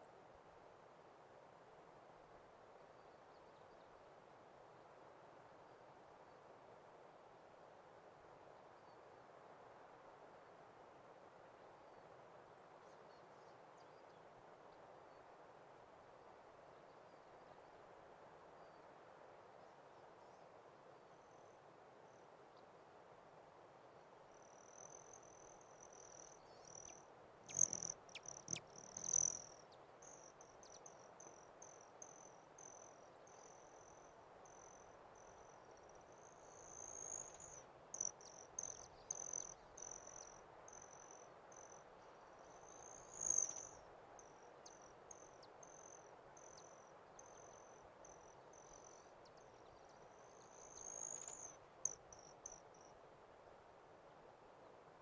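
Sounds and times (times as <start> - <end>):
faint outdoor hiss: 0.0 - 55.0
high-pitched chirping: 26.8 - 29.5.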